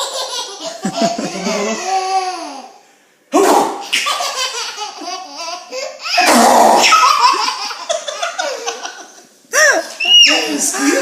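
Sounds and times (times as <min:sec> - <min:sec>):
young child laughing: 0:00.0 - 0:02.6.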